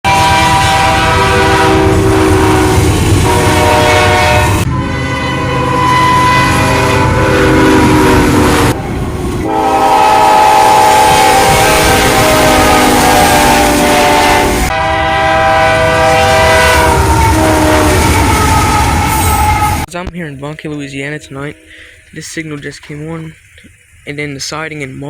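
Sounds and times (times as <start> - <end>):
locomotive air horn chord: 0.0 - 19.9, 20.9 - 23.2
train rumbling on rails: 0.0 - 25.0.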